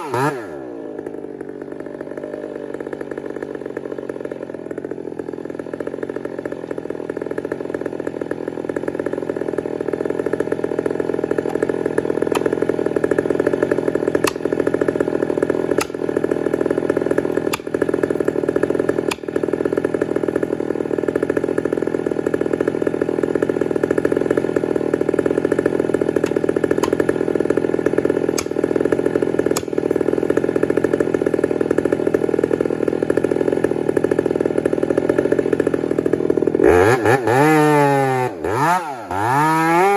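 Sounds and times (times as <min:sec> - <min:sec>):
chainsaw cutting tree: 0:00.0 - 0:39.9
sharp ticks: 0:28.4 - 0:28.6.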